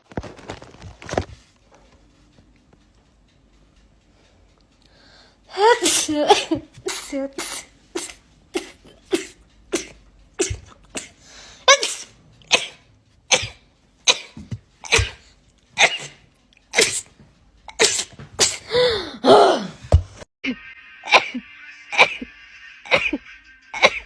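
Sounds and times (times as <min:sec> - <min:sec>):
person sneezing: 0:05.8 - 0:16.2, 0:16.8 - 0:17.1, 0:17.7 - 0:19.8.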